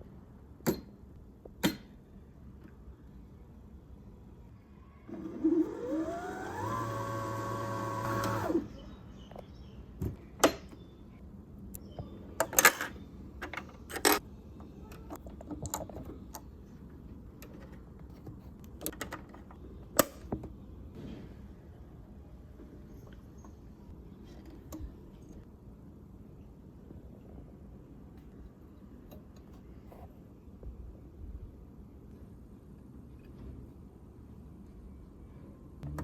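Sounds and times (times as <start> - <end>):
sewing machine motor whine: 5.1 - 8.8.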